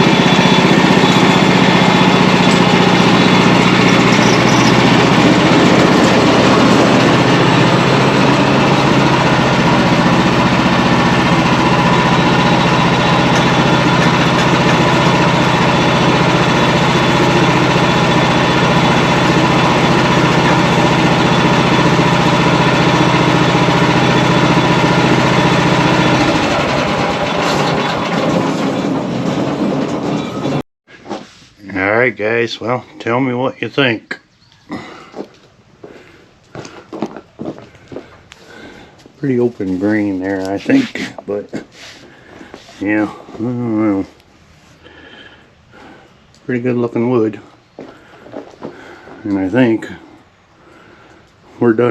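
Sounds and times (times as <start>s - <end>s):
gasoline engine droning: 0.0s - 51.9s.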